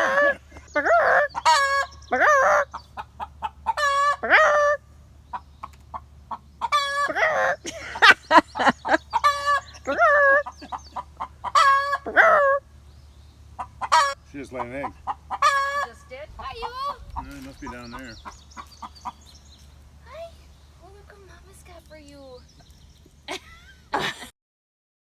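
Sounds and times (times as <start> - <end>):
hen clucking and squawking: 0.0 - 21.3.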